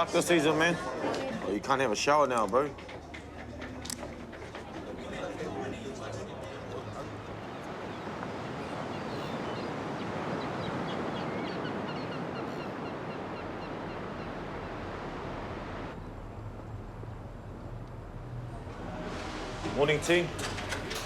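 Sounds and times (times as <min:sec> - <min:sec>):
rushing water: 0:04.8 - 0:16.0, 0:18.5 - 0:21.0.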